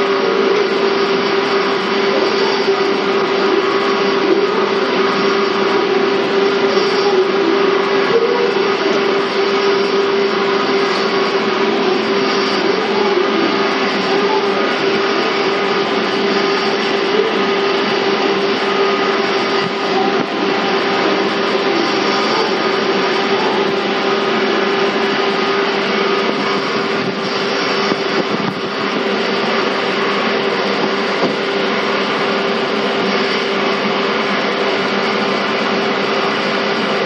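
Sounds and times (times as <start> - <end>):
steady droning tone: 0.0 - 37.0
train rolling and motor noise: 0.0 - 37.0.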